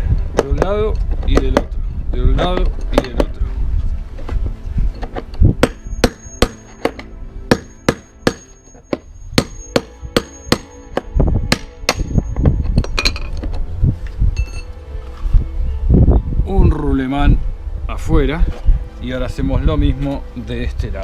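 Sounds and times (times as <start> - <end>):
hammer striking steel bar: 5.6 - 13.3.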